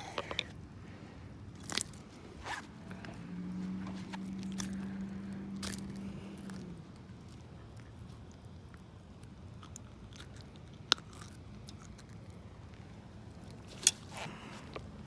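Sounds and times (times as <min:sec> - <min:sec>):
faint crackling handling noise: 0:00.0 - 0:15.0
low steady hum: 0:00.0 - 0:15.0.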